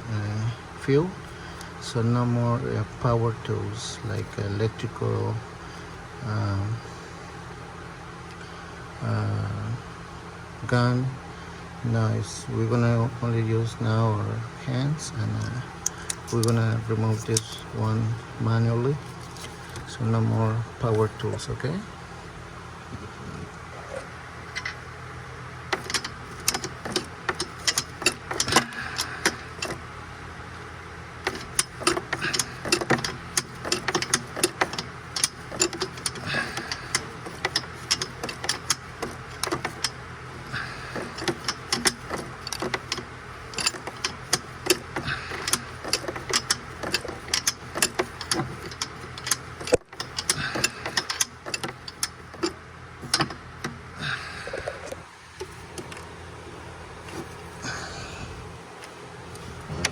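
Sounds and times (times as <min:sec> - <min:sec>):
steady low hum: 0:00.0 - 0:59.9
ratchet wrench clicking: 0:15.9 - 0:17.6, 0:25.7 - 0:29.8, 0:31.2 - 0:53.8.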